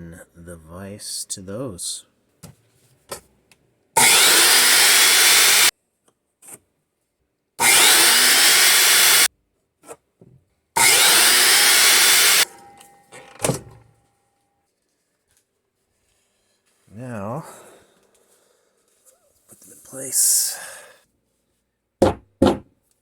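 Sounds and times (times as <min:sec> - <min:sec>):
power tool working wood: 0:04.0 - 0:05.7, 0:07.6 - 0:09.3, 0:10.8 - 0:12.5.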